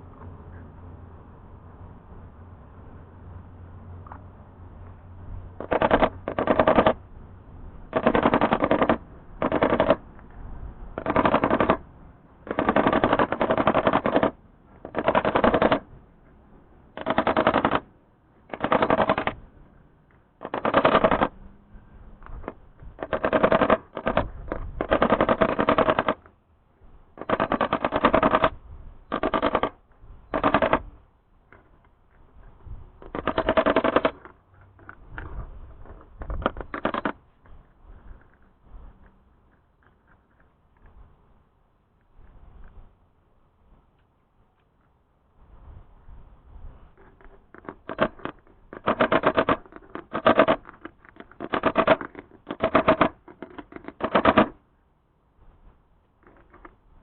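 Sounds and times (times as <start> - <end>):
rapid mechanical rattling: 5.4 - 7.0, 7.8 - 10.1, 10.9 - 16.0, 16.9 - 19.6, 20.4 - 39.2, 46.9 - 54.6.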